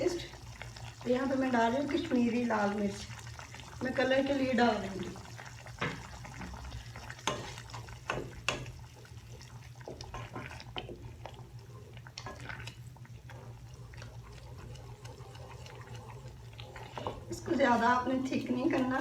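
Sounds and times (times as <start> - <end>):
steady low hum: 0.0 - 19.0
spoon stirring simmering sauce: 0.1 - 19.0
spoon tapping pan: 7.2 - 8.8.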